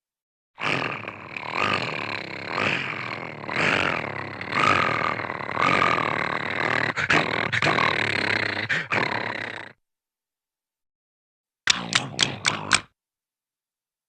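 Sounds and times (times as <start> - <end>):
gravelly cartoon dog vocalization: 0.6 - 9.8, 11.7 - 12.9.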